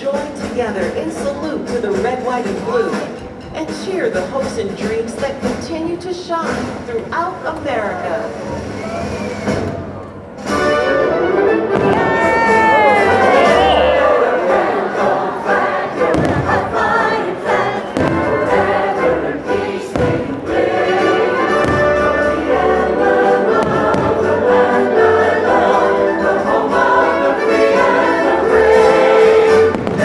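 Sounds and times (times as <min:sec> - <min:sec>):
orchestral music with choir: 0:08.2 - 0:30.0
fireworks thudding: 0:09.2 - 0:30.0.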